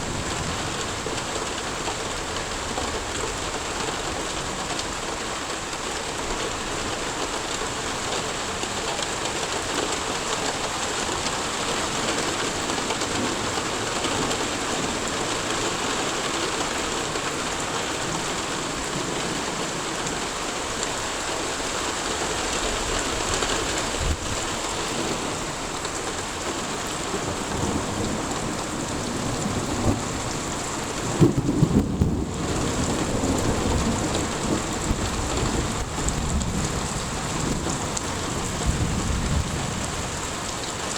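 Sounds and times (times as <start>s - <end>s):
heavy rain falling: 0.0s - 40.9s
thunder rumbling: 22.2s - 40.6s.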